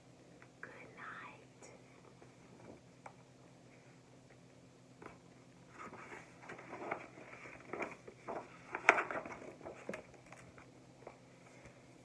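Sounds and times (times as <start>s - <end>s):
handling rustling and taps: 5.0s - 11.8s.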